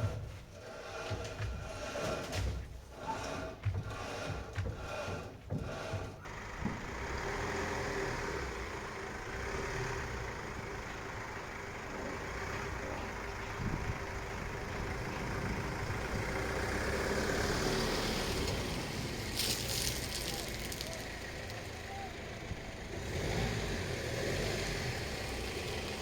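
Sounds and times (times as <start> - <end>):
van engine running: 6.0 - 26.0.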